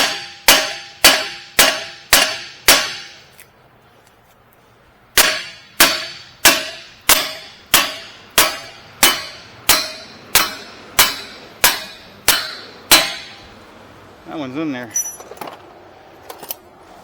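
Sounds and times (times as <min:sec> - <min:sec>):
hammer striking metal axle: 0:00.0 - 0:03.3, 0:05.2 - 0:13.6.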